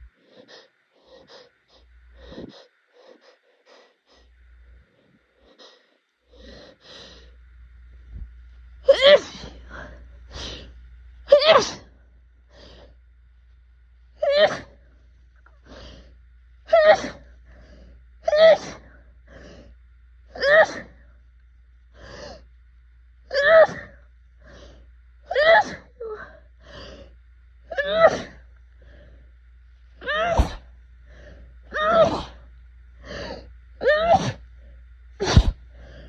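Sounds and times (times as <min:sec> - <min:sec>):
sharp gasping breath: 0:00.2 - 0:04.3, 0:30.4 - 0:31.4, 0:35.2 - 0:36.0
person sneezing: 0:30.2 - 0:30.6, 0:35.2 - 0:35.6.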